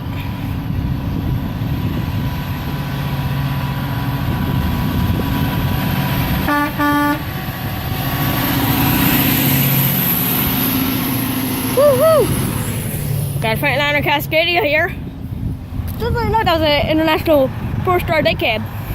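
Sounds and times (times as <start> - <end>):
truck engine and road rumble: 0.0 - 18.9
truck horn blasts: 6.4 - 7.4.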